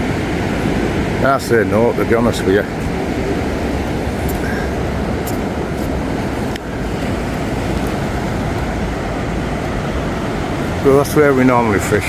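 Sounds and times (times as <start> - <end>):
sea at the shore: 0.0 - 12.0
wind: 0.0 - 12.0.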